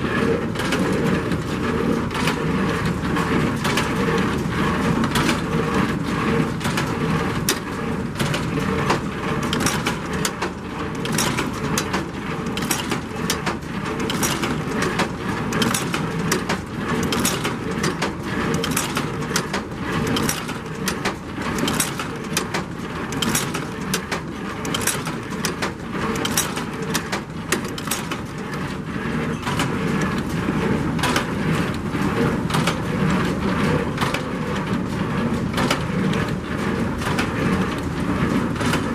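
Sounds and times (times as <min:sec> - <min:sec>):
baler mechanical clatter: 0:00.0 - 0:38.9.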